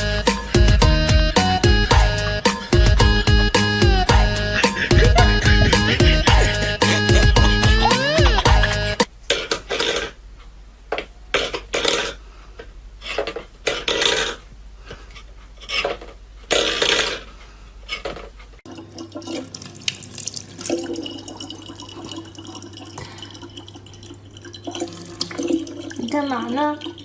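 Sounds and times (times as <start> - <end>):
running water: 18.7 - 27.0
water splashing: 18.7 - 27.0.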